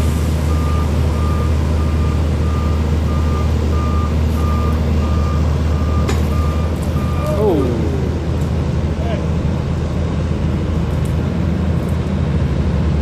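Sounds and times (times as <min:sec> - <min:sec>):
backup alarm beeping: 0:00.5 - 0:07.8
machine engine drone: 0:04.2 - 0:11.2.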